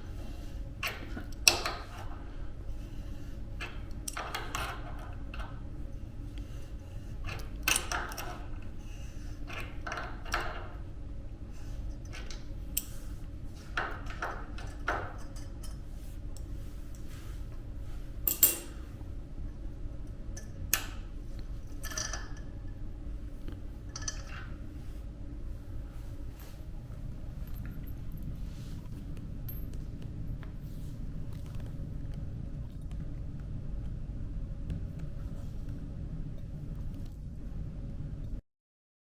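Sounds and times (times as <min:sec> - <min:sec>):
steady low hum: 0:00.0 - 0:38.4
metal tools clicking and clinking: 0:18.2 - 0:18.8, 0:21.7 - 0:22.5, 0:23.9 - 0:24.5.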